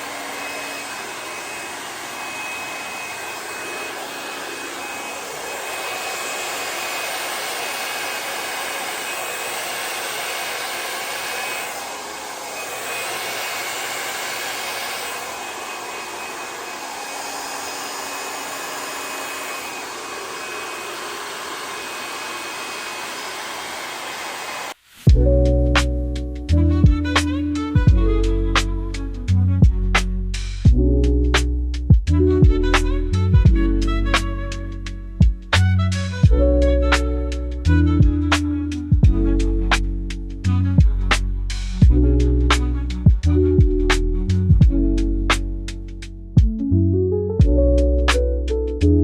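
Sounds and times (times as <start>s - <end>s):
hair dryer blowing: 0.0s - 25.2s, 26.7s - 29.3s, 32.4s - 41.9s
music: 25.1s - 49.0s.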